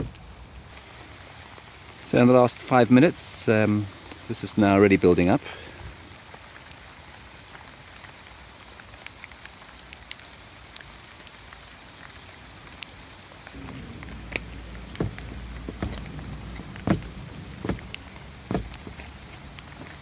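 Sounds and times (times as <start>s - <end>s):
steady rain falling: 0.0s - 20.0s
low rumble: 13.4s - 20.0s
drops ticking on surfaces: 13.5s - 20.0s.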